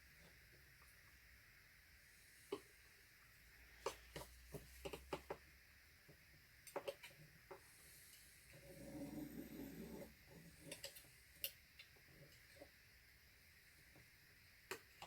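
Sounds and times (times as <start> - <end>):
paint scraping clicks and taps: 3.8 - 5.4, 6.1 - 8.2.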